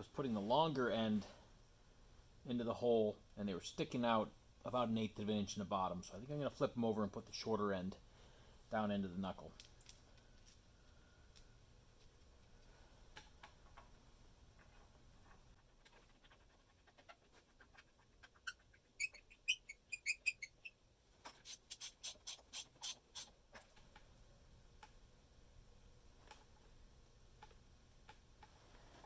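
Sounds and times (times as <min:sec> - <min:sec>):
light metallic clinks: 0:09.5 - 0:12.3.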